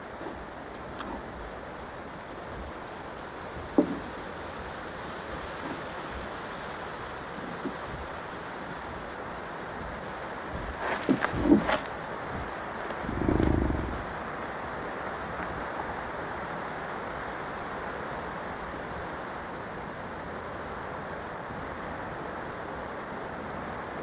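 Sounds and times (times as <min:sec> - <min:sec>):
wind-like rushing noise: 0:00.0 - 0:24.0
bison grunt: 0:13.0 - 0:14.1.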